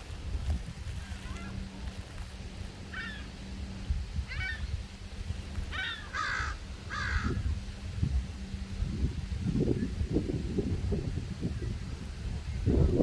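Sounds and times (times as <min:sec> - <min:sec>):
low wind rumble: 0:00.0 - 0:13.0
crow cawing: 0:02.9 - 0:03.3, 0:05.7 - 0:07.4.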